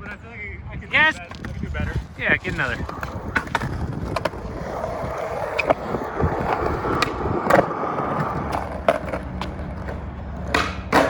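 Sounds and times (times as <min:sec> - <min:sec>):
skateboard wheels rolling: 0:01.1 - 0:11.0
skateboard clacks: 0:02.7 - 0:11.0.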